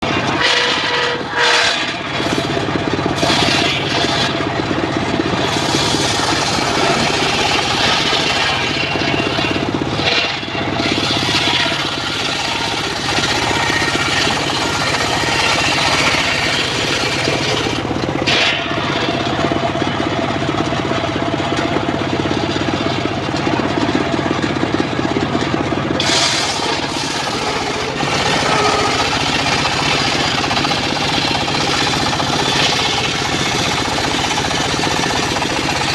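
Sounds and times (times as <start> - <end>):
sawmill engine and saw blade: 0.0 - 35.9.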